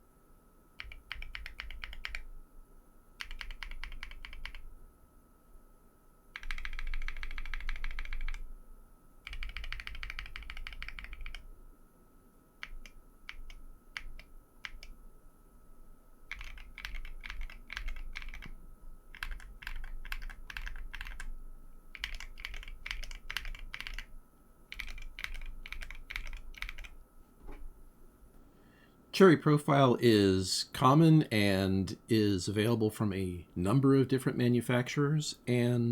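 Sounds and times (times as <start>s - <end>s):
mechanical keyboard typing: 0.8s - 2.3s, 3.2s - 4.6s, 6.4s - 8.4s, 9.2s - 11.4s, 12.6s - 15.0s, 16.3s - 21.3s, 21.9s - 24.1s, 24.7s - 27.0s.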